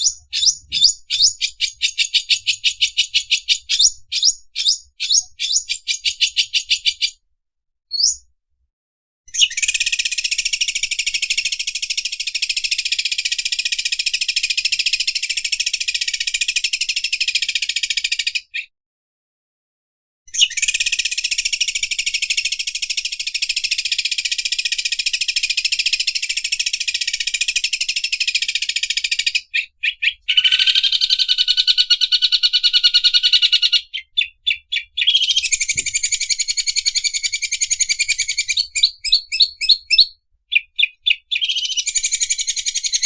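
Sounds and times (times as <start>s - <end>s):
bird singing rapid chirps: 0.0s - 7.2s, 7.9s - 8.3s, 20.3s - 43.0s.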